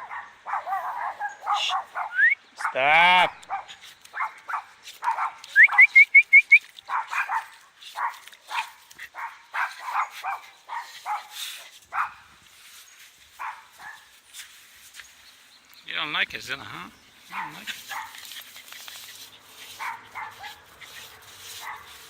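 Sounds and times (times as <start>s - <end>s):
dog barking and yelping: 0.0s - 6.0s, 6.9s - 11.3s, 11.9s - 12.2s, 13.4s - 14.1s, 17.3s - 18.3s, 19.7s - 22.0s.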